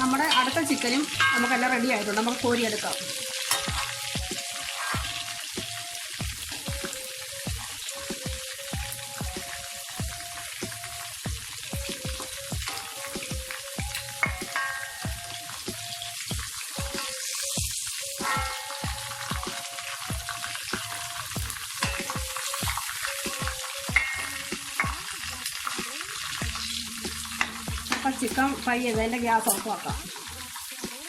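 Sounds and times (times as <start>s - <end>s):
spoon clinking and scraping pan: 0.0s - 2.3s, 3.4s - 5.2s, 12.6s - 13.1s, 13.9s - 15.1s, 18.1s - 19.3s, 21.8s - 25.0s
chicken deep-frying in oil: 0.0s - 31.0s.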